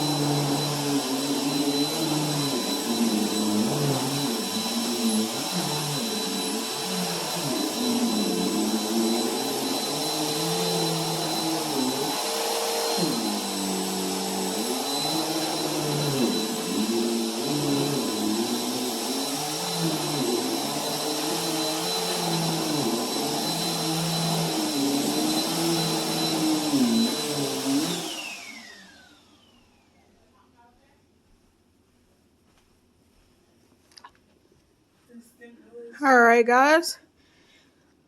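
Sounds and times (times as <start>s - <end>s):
vacuum motor winding down: 0.0s - 30.0s
vacuum cleaner running: 0.0s - 30.2s.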